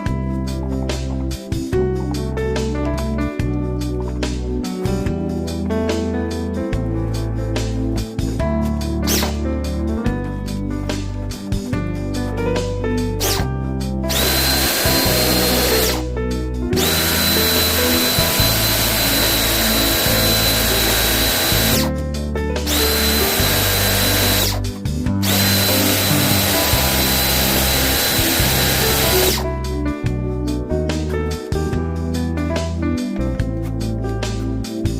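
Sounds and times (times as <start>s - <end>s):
motor-driven tool whining: 9.1s - 9.4s, 13.2s - 13.4s, 14.1s - 16.0s, 16.8s - 21.9s, 22.7s - 29.4s.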